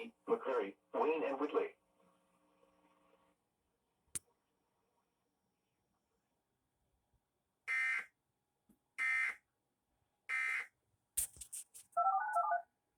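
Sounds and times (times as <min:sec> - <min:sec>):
sharp clicks: 0:11.2 - 0:12.4.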